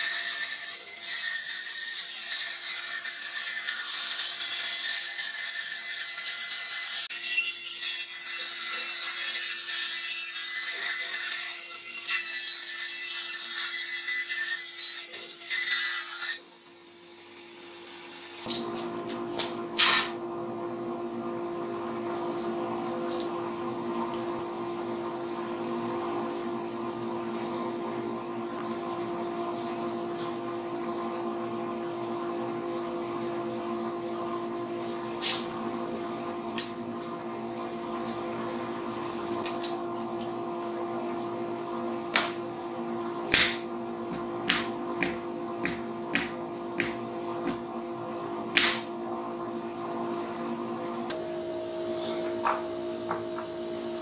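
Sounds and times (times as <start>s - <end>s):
machine motor humming: 35.5s - 54.0s.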